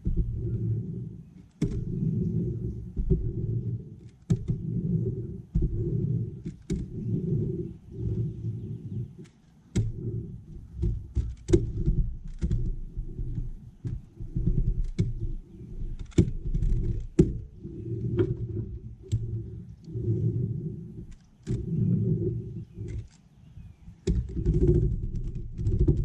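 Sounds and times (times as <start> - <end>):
low uneven rumble: 0.0 - 26.0
sharp clicks and knocks: 1.4 - 2.0, 2.6 - 4.6, 6.4 - 7.0, 9.1 - 19.9, 21.0 - 21.7, 22.8 - 23.2, 24.0 - 26.0.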